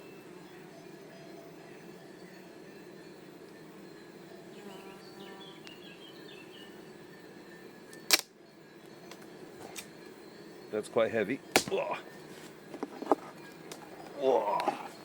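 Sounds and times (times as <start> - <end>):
bees buzzing: 0.0 - 15.0
sharp knock: 11.6 - 11.8.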